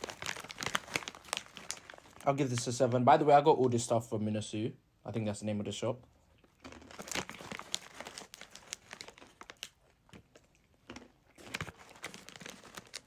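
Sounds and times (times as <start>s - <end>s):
snack packet crinkling: 0.0s - 2.8s, 6.4s - 13.0s.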